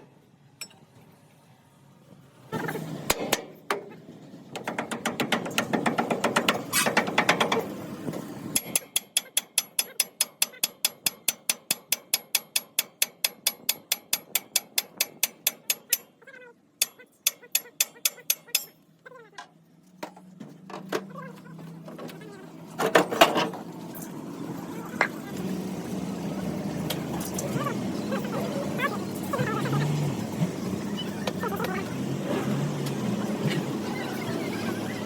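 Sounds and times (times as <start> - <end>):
metallic tapping: 16.8 - 18.8.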